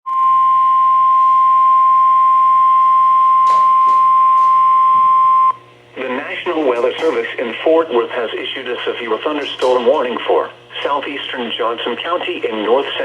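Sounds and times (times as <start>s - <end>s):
steady alarm beep: 0.1s - 5.6s
static crackles: 2.2s - 13.0s.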